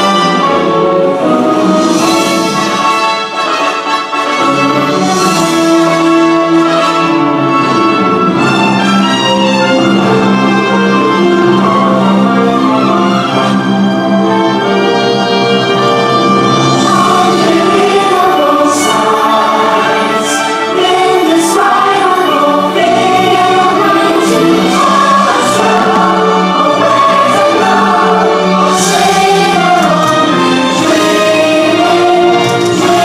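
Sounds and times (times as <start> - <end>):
choir singing over orchestra: 0.0 - 33.0.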